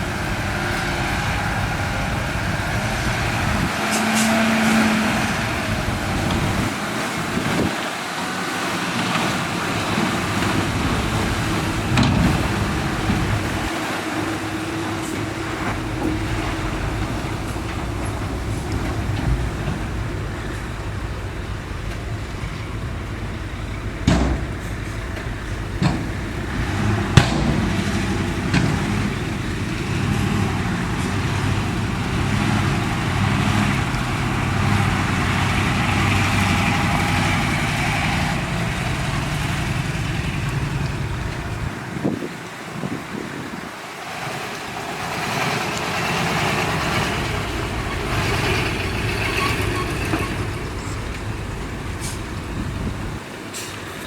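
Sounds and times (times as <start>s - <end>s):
diesel truck engine under load: 0.0s - 54.0s
sharp knocks: 24.0s - 29.2s.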